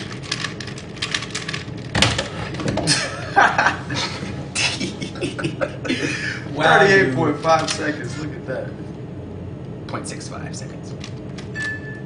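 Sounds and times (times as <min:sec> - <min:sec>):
plastic cube clicking and clattering: 0:00.0 - 0:02.3.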